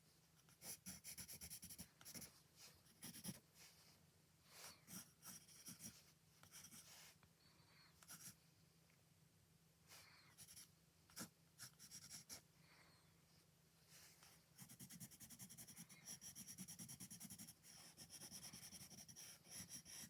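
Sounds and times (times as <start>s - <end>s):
drawing tool scratching on paper: 0.5s - 2.3s, 2.9s - 3.4s, 4.8s - 7.0s, 10.4s - 12.4s, 14.6s - 20.0s.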